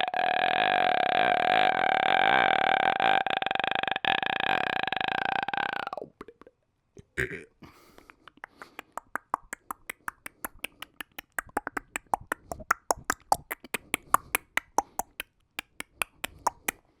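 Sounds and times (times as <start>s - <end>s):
throaty sound: 5.9s - 17.0s
wet mouth clicks and smacks: 8.0s - 17.0s.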